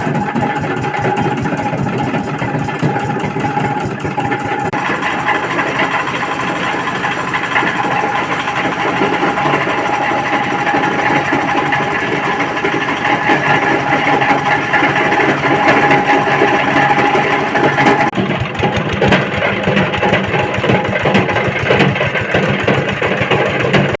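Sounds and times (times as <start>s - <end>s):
cloth shredding machine running: 0.0s - 24.0s.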